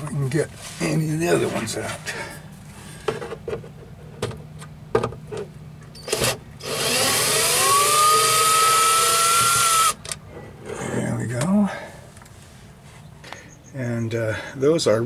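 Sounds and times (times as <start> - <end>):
electric drill whining: 6.0 - 10.0.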